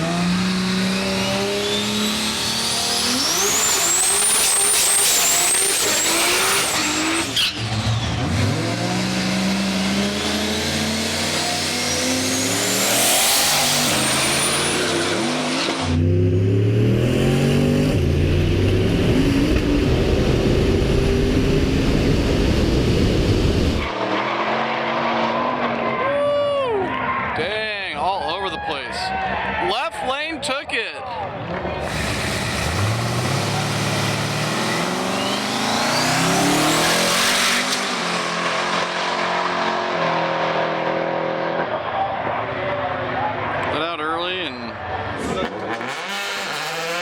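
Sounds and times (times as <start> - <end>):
drag race cars accelerating: 0.0 - 27.4, 31.2 - 47.0
high whine: 18.3 - 23.9.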